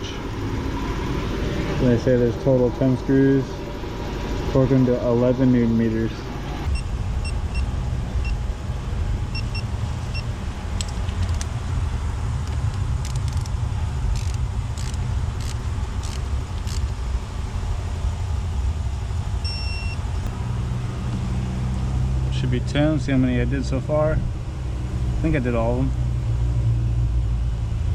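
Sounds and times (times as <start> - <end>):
steady low hum: 0.0 - 27.9
torque wrench clicking: 12.4 - 16.9
short electronic beeps: 19.4 - 20.0.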